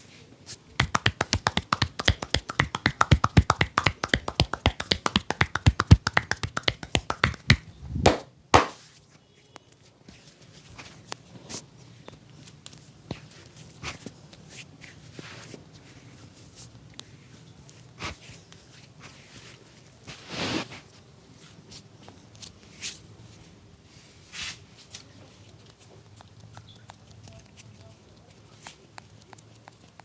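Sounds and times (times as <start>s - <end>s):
hands rubbing skin: 0.5s - 8.9s
light taps on skin: 0.8s - 8.8s.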